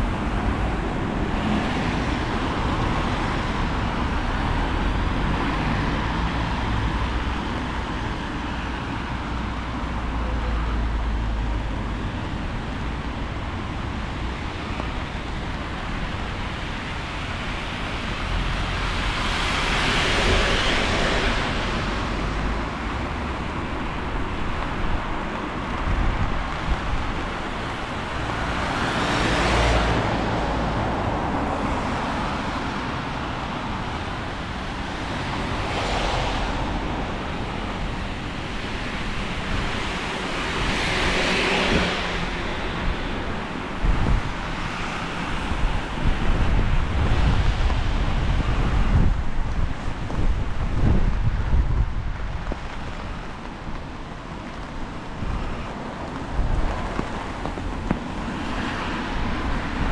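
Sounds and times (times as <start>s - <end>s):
road traffic hiss: 0.0s - 59.9s
wind rumbling on microphone: 0.0s - 59.9s
vehicle passing with tyre hiss: 15.9s - 24.2s, 26.2s - 49.2s.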